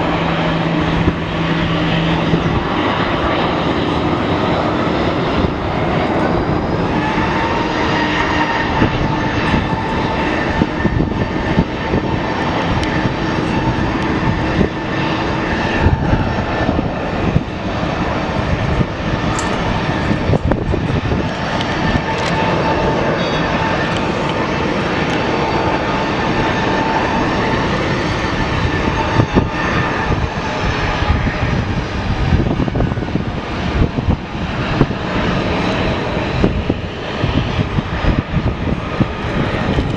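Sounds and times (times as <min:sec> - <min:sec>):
jet engines running: 0:00.0 - 0:39.9.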